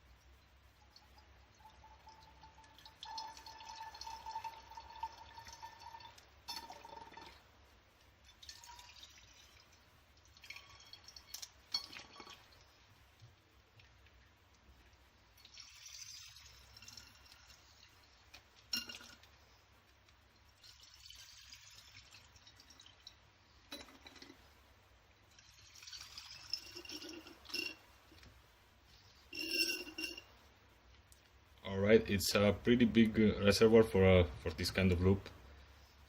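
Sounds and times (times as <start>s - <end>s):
water pouring into reservoir: 0.8s - 7.5s, 8.3s - 12.7s, 15.3s - 19.3s, 20.3s - 24.4s, 25.2s - 27.8s.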